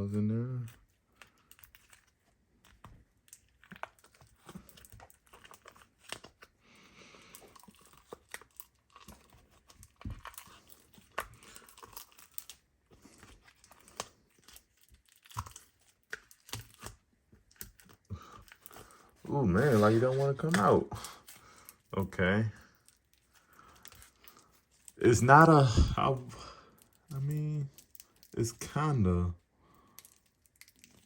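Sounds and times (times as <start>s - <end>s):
slime squished by hand: 7.3s - 28.9s.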